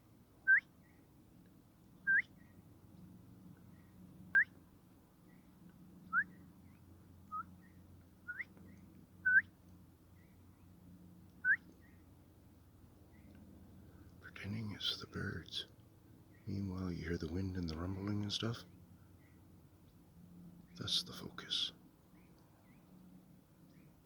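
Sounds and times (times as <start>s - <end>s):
bird whistled calls: 0.5s - 0.7s, 2.1s - 2.4s, 6.1s - 6.4s, 7.3s - 7.7s, 8.3s - 8.5s, 9.2s - 9.5s, 11.4s - 11.9s.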